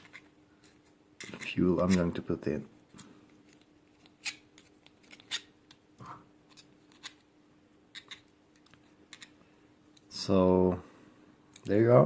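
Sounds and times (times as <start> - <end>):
light clicks and scratches: 0.0 - 2.2, 2.9 - 5.8
faint steady hum: 0.0 - 12.0.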